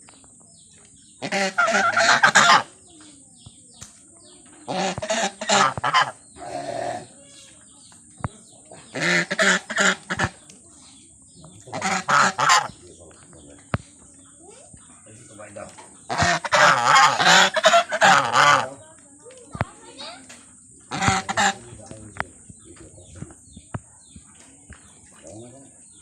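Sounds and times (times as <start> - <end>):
geese honking: 1.2 - 2.8, 4.7 - 6.6, 8.9 - 10.5, 11.6 - 13.0, 16.0 - 18.8, 20.8 - 23.4.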